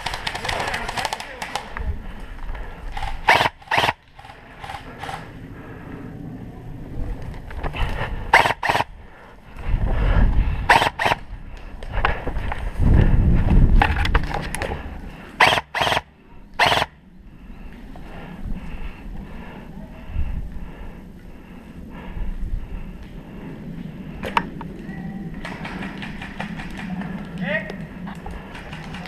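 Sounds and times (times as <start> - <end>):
handling rumble near microphone: 0.0 - 29.0
airsoft gun shots: 3.0 - 4.0, 8.3 - 8.9, 10.7 - 11.2, 15.4 - 16.0, 16.6 - 16.9.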